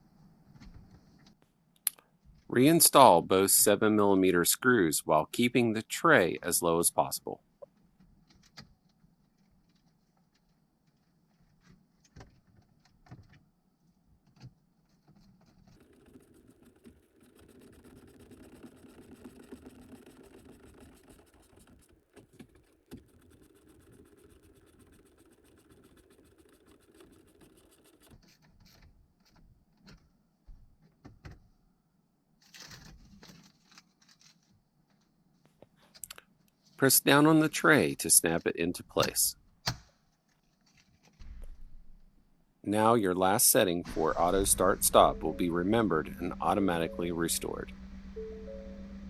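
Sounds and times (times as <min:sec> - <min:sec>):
faint steady whirring: 0:15.0 - 0:28.7, 0:43.6 - 0:49.0.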